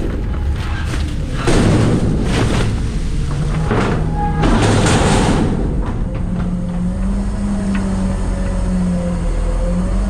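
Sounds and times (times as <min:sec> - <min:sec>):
garbage truck humming: 0:00.0 - 0:10.0.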